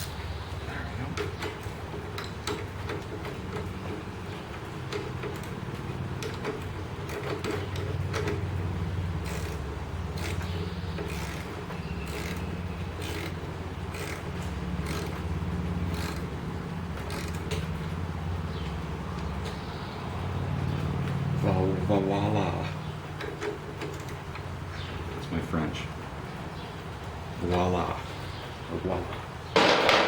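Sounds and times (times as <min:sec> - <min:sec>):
hand tools clicking on metal: 0:01.1 - 0:08.5, 0:09.1 - 0:18.0, 0:23.2 - 0:24.5.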